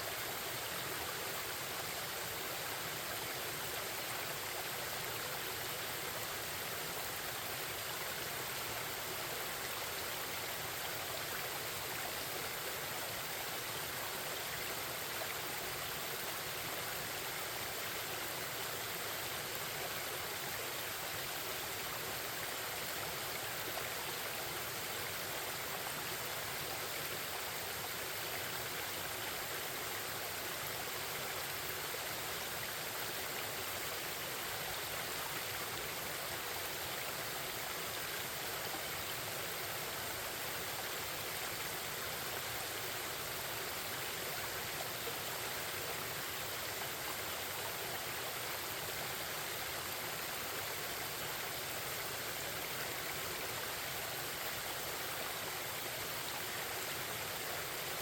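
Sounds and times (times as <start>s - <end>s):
stream babbling: 0.0s - 58.0s.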